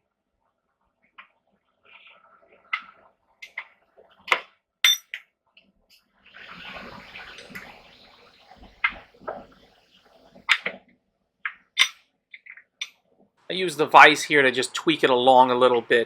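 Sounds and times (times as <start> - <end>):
hammer clinking on steel anvil: 4.9 - 5.1
rushing water-like hiss: 6.4 - 8.8.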